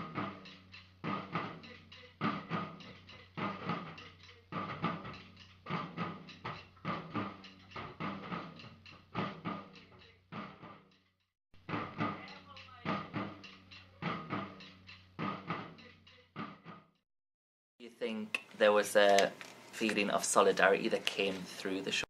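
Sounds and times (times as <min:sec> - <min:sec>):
drums struck in steady rhythm: 0:00.0 - 0:10.9, 0:11.6 - 0:16.7.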